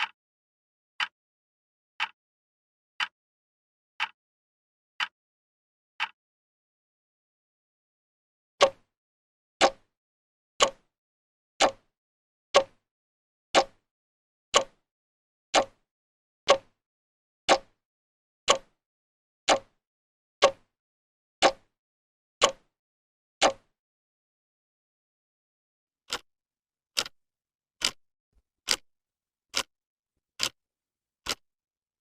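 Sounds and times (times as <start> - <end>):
clock ticking: 8.6 - 8.9, 9.6 - 9.9, 10.6 - 10.9, 11.6 - 11.9, 12.6 - 12.8, 13.6 - 13.8, 14.6 - 14.8, 15.6 - 15.8, 16.5 - 16.8, 17.5 - 17.8, 18.5 - 18.8, 19.5 - 19.8, 20.4 - 20.7, 21.4 - 21.7, 22.4 - 22.7, 23.4 - 23.7, 26.1 - 26.3, 27.0 - 27.2, 27.8 - 28.0, 28.7 - 28.9, 29.5 - 29.7, 30.4 - 30.6, 31.2 - 31.5.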